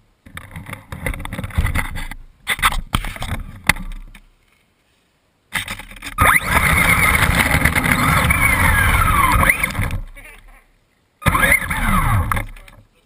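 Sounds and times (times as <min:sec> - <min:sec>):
rattles and knocks: 0:00.2 - 0:04.2
electric motor whine: 0:06.2 - 0:10.2, 0:11.2 - 0:12.6.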